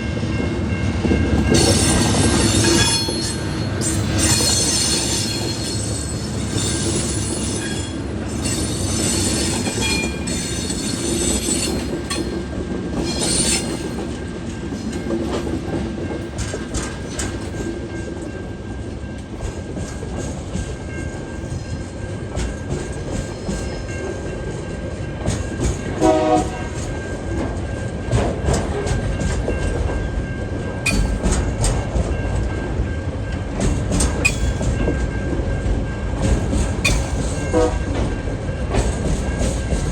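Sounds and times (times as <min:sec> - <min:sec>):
train wheels and wagons rumbling: 0:00.0 - 0:39.9
rail joint clicks: 0:00.3 - 0:39.9
wheel squeal: 0:30.9 - 0:31.2, 0:34.2 - 0:34.6, 0:36.8 - 0:37.4.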